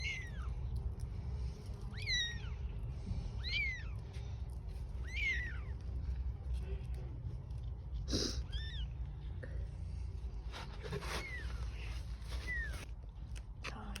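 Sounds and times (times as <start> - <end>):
kittens mewing: 0.0 - 0.7, 1.8 - 4.1, 4.8 - 5.8, 8.0 - 9.1
steady low rumble: 0.0 - 10.5.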